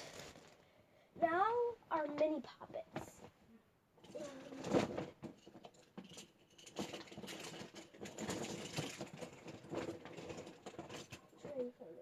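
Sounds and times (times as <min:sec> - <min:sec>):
rummaging through toys: 0:00.0 - 0:00.6
light clattering of toys: 0:04.0 - 0:12.0.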